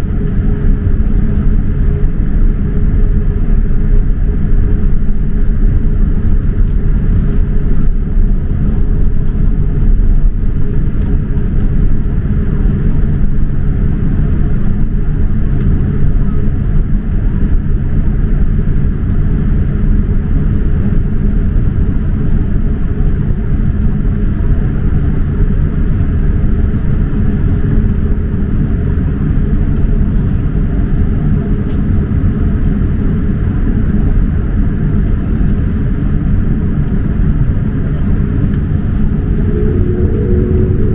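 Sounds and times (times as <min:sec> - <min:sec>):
aircraft engines rumbling: 0:00.0 - 0:40.9
faint high whine: 0:38.5 - 0:40.9.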